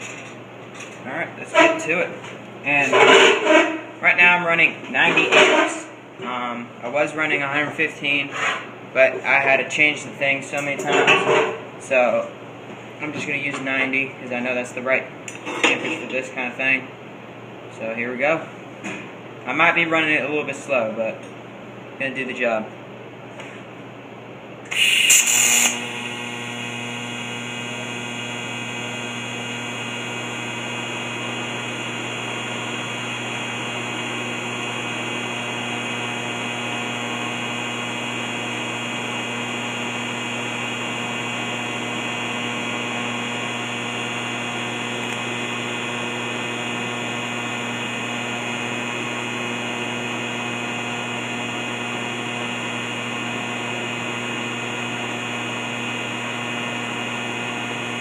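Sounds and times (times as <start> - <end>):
welding arc humming: 2.7 - 4.3, 24.7 - 58.0.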